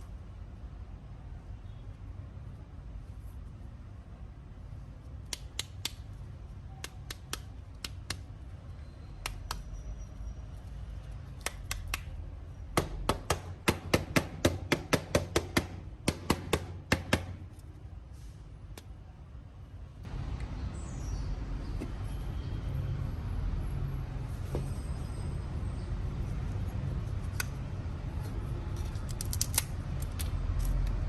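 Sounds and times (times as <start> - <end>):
small hard parts clicking: 28.8 - 31.0.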